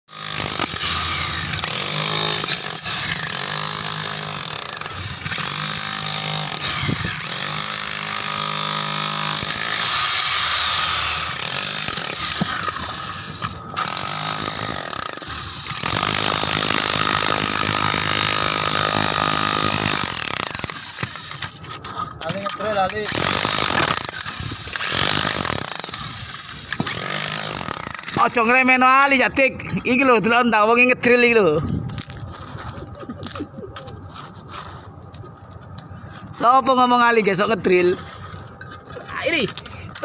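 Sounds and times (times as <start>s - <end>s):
power drill running: 0.2s - 21.3s.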